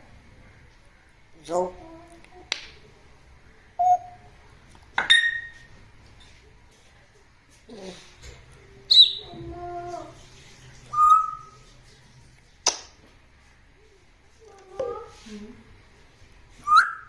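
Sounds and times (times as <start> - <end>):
parrot whistles and calls: 3.8 - 4.2, 5.0 - 5.7, 8.9 - 9.4, 10.9 - 11.6, 16.6 - 17.0
parrot squawk: 5.0 - 5.7, 10.9 - 11.6.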